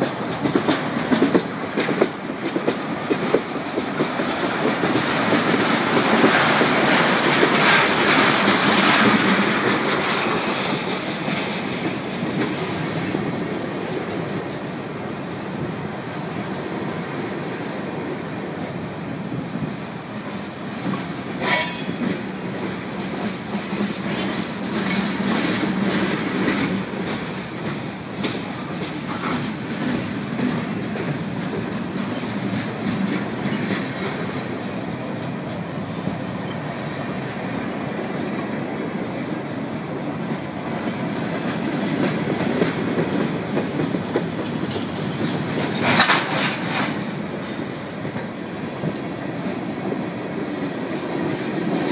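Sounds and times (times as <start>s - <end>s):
wheels clacking over rail joints: 0.0s - 18.1s, 19.6s - 51.9s
freight train cars rumbling: 0.0s - 51.9s
sharp metallic clank: 21.4s - 22.0s.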